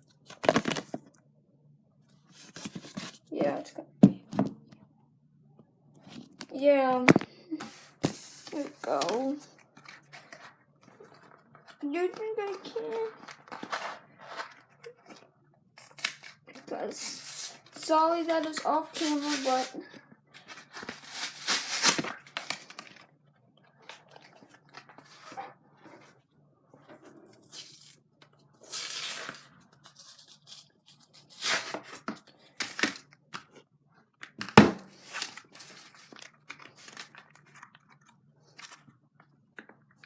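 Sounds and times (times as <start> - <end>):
packaging crinkling and tearing: 8.4 - 15.2, 15.8 - 17.8, 20.4 - 23.1, 34.2 - 38.9.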